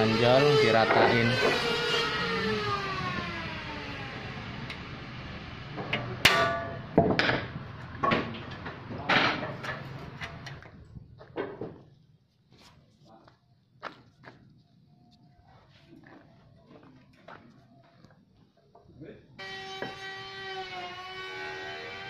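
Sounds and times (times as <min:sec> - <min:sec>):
machine hum: 0:00.0 - 0:07.9
knocks and clattering impacts: 0:05.7 - 0:11.9.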